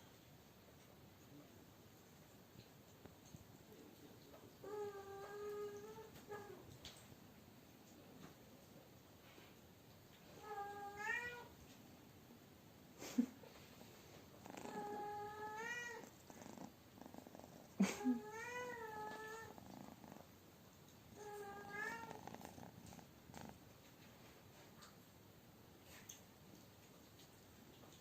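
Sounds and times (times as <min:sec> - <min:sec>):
cat meowing: 0:10.4 - 0:11.5, 0:14.7 - 0:16.1, 0:21.2 - 0:22.3.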